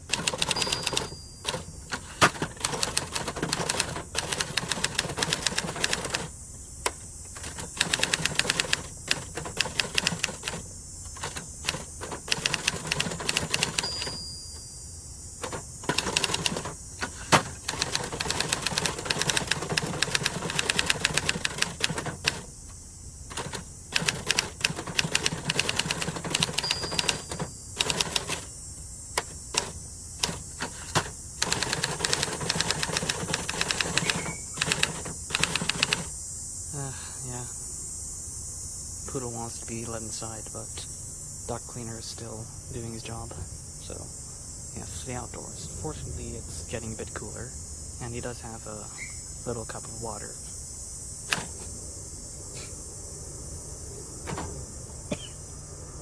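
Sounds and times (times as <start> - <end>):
manual typewriter keys clacking: 0.0 - 14.2, 15.4 - 22.5, 23.3 - 28.5, 29.1 - 36.1, 51.3 - 51.6.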